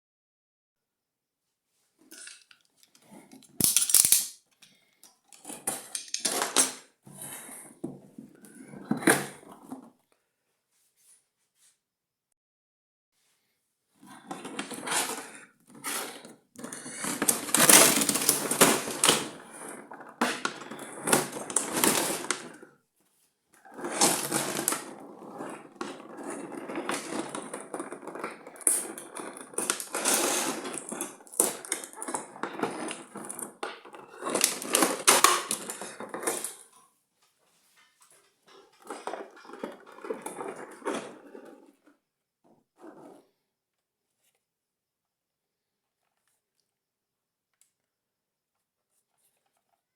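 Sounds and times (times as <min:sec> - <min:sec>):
packaging crinkling and rustling: 0:03.6 - 0:04.3, 0:17.0 - 0:22.6, 0:23.9 - 0:36.6.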